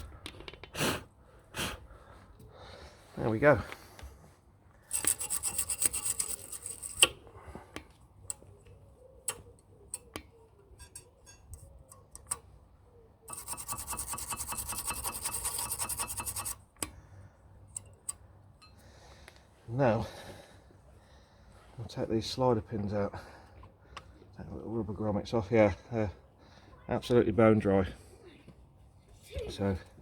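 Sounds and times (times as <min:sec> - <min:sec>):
hand tool rasping: 0:04.9 - 0:07.1, 0:13.3 - 0:16.6.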